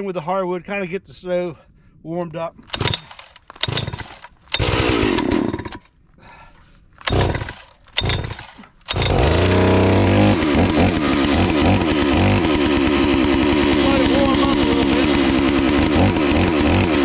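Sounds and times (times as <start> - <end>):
pull cord rasping: 2.6 - 5.9, 7.0 - 17.0
chainsaw engine running: 2.7 - 5.8, 7.0 - 17.0.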